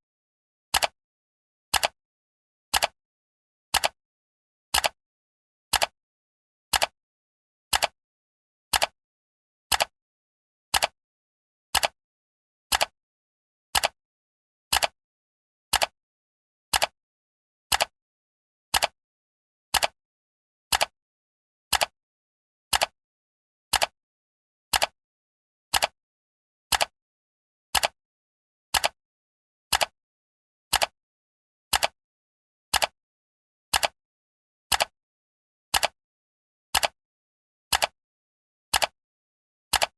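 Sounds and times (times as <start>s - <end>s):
timer ticking: 9.7s - 9.9s, 18.8s - 19.0s, 19.7s - 20.0s, 34.7s - 34.9s.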